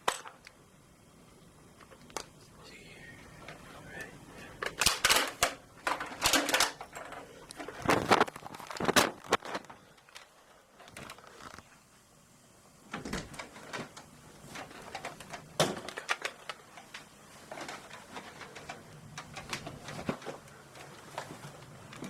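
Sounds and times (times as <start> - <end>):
clicks and knocks of handling: 0.0 - 0.6, 4.6 - 11.7, 12.9 - 22.0.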